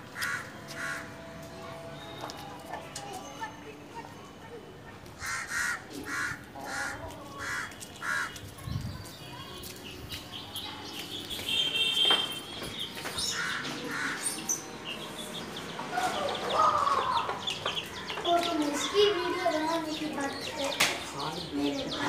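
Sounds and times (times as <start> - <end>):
harsh repeated bird calls: 5.2 - 8.5, 9.8 - 22.0.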